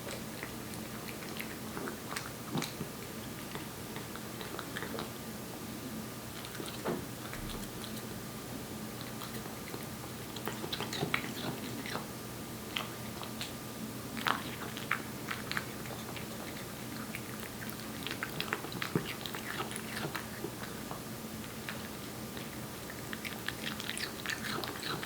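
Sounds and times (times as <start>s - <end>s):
cat chewing wet food: 0.0s - 5.2s, 6.3s - 8.2s, 8.8s - 25.0s.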